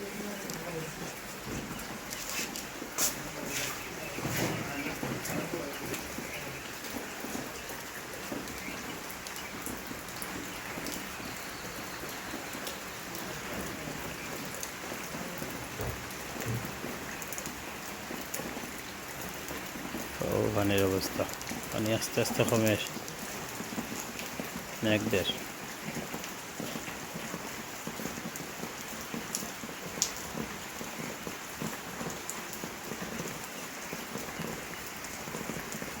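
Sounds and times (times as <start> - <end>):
steady rain falling: 0.0 - 36.0.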